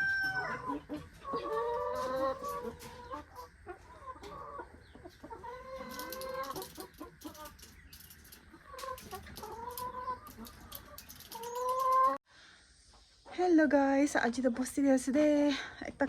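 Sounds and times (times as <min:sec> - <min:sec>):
rooster crowing: 0:00.0 - 0:00.8
chickens clucking: 0:00.0 - 0:12.2, 0:12.8 - 0:13.4.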